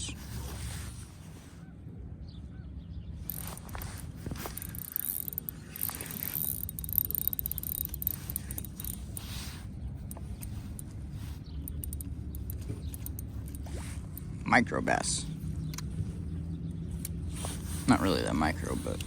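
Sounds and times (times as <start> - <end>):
fishing reel ratchet clicking: 3.3 - 9.4, 10.1 - 14.1.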